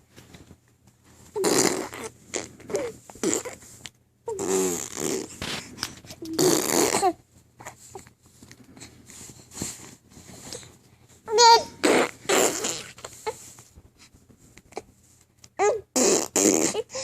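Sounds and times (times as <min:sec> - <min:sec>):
baby blowing raspberries: 0:01.4 - 0:03.7, 0:04.3 - 0:05.6, 0:06.2 - 0:07.2, 0:11.3 - 0:13.4, 0:15.9 - 0:17.0.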